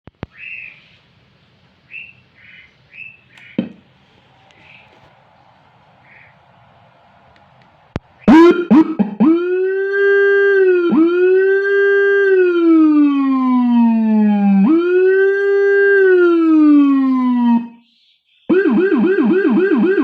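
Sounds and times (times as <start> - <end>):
electronic siren wailing: 8.2 - 17.8, 18.5 - 20.0.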